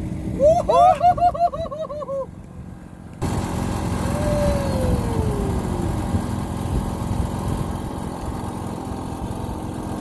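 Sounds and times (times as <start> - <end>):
boat engine idling: 0.0 - 10.0.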